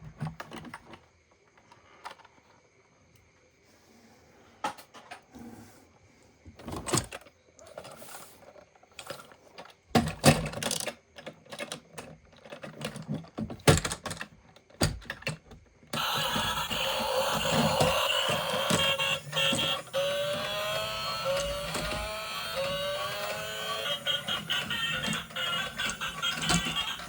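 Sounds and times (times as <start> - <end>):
plastic toys and packaging handled: 6.6 - 15.4, 16.0 - 27.0.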